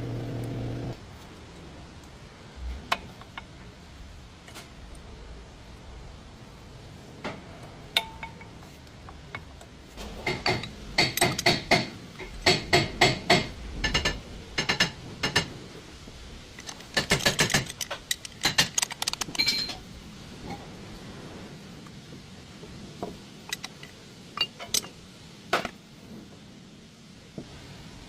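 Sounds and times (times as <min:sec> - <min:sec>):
metal tapping on metal: 0:08.0 - 0:09.5, 0:10.2 - 0:15.5.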